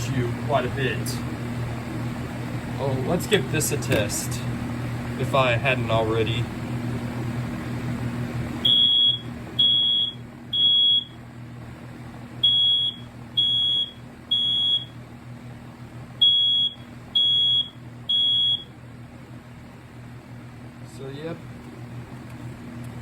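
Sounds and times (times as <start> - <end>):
smoke alarm beeping: 8.6 - 11.2, 12.4 - 15.0, 16.2 - 18.7.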